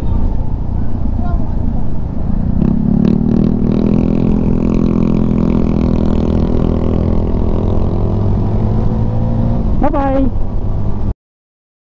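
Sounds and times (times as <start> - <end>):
low wind rumble: 0.0 - 11.1
motorcycle engine running: 2.3 - 10.8.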